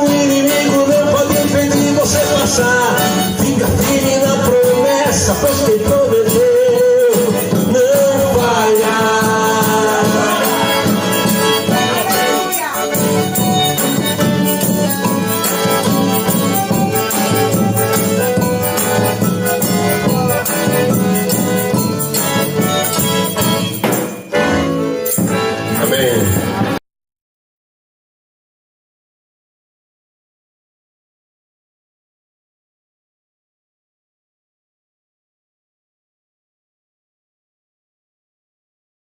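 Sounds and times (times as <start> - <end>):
gospel band playing: 0.0 - 26.8
high percussion rhythm: 0.0 - 26.8.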